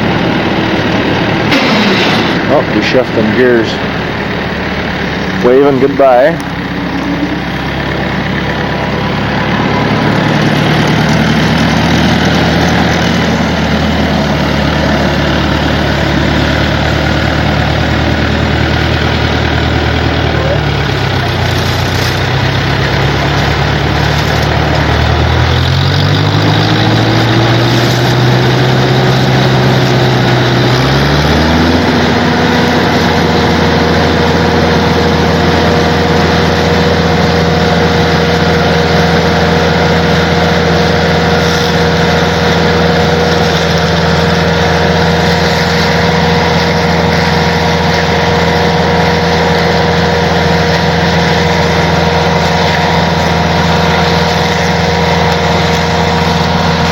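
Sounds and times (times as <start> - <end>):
steady engine whine: 0.0 - 56.9
vehicle engine speeding up: 0.0 - 56.9.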